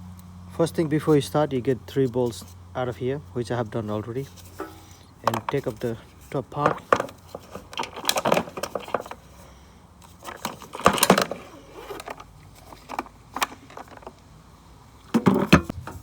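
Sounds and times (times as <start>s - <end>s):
plastic clatter: 4.4s - 14.2s, 15.1s - 16.0s
plastic cover clicking and rattling: 4.6s - 9.4s, 10.0s - 14.3s, 15.1s - 15.8s.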